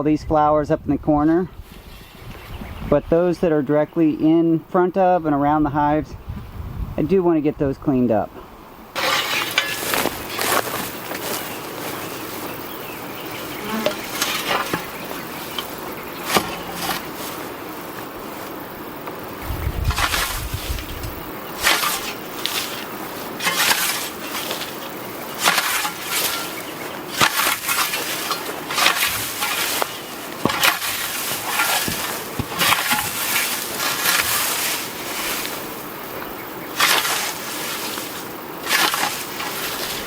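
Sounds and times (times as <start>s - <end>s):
scythe swishing through grass: 9.0s - 18.6s, 19.9s - 36.0s, 36.6s - 40.0s.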